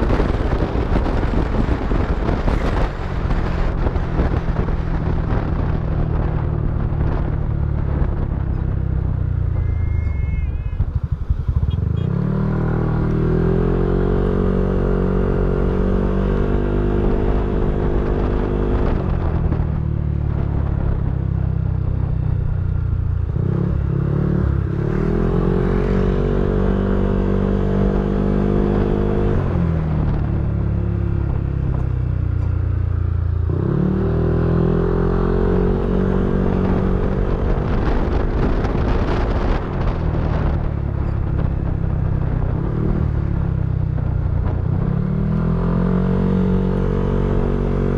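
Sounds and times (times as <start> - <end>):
scooter engine revving: 9.6 - 14.6.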